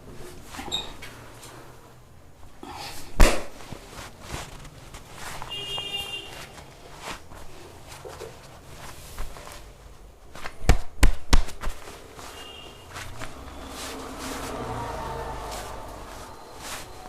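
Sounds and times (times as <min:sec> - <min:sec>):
loud slaps on skin: 0:03.2 - 0:03.5, 0:10.4 - 0:11.8
hands patting and rubbing body: 0:03.2 - 0:17.0.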